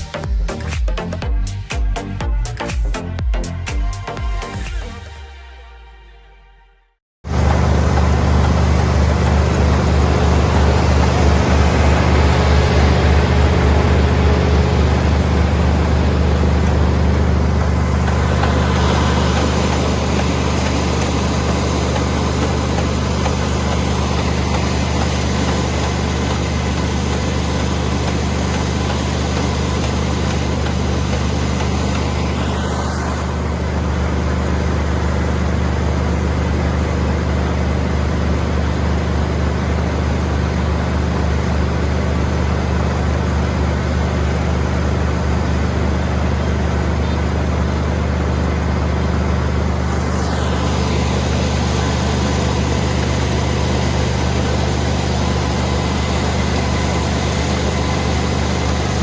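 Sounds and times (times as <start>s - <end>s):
diesel engine hum: 7.2s - 59.0s
mechanical hiss from machinery: 7.3s - 34.2s.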